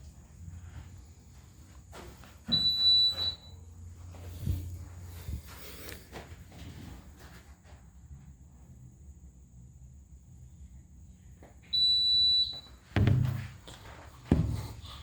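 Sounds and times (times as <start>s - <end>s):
fire alarm electronic beep: 2.5s - 3.7s, 11.7s - 12.8s.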